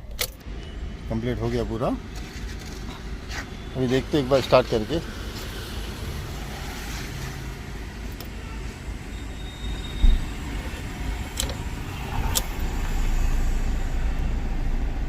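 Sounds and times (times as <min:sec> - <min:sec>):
diesel engine cranking and starting: 0:06.9 - 0:15.0.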